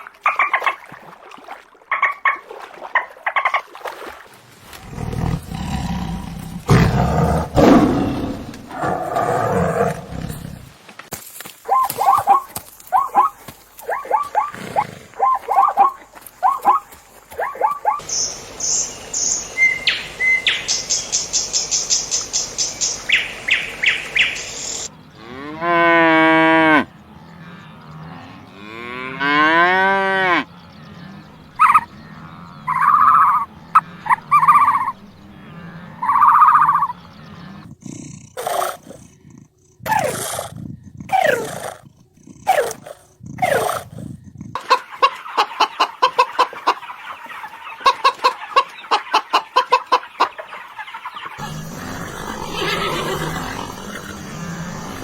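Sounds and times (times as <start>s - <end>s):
cattle mooing: 4.8s - 10.7s, 25.1s - 38.0s, 51.4s - 55.0s
animal chirps and cries: 31.6s - 31.9s, 50.3s - 55.0s.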